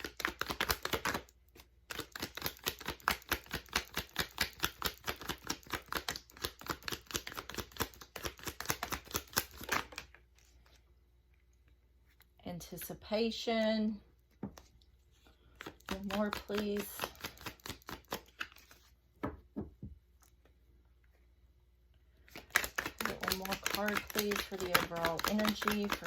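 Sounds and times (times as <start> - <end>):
cards being shuffled by hand: 0.0 - 10.8, 14.3 - 19.3, 22.2 - 26.0.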